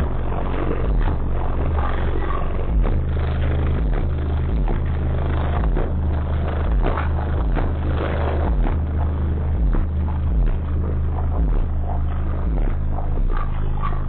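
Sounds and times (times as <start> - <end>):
bass-heavy music through subwoofer: 0.0 - 14.0.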